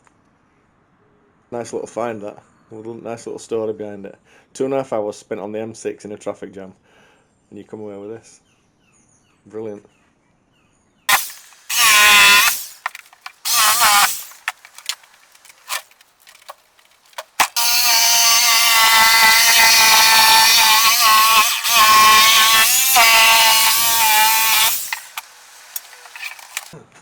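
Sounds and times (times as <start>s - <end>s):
power tool motor whine: 11.1s - 26.8s.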